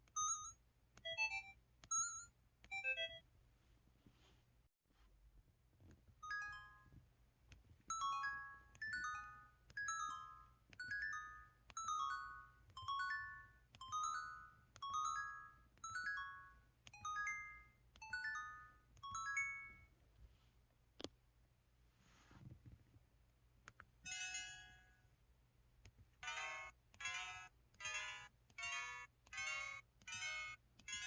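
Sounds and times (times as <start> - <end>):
phone keypad harp chimes: 26.2 - 31.0.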